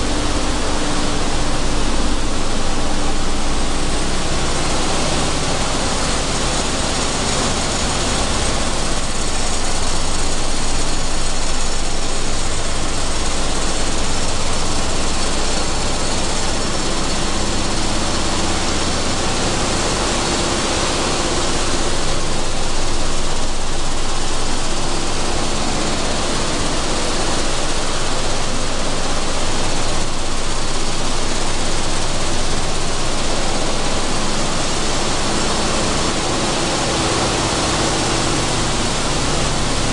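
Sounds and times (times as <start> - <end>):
faint machine hum: 0.0 - 39.9
hulling machine rushing noise: 14.0 - 39.9.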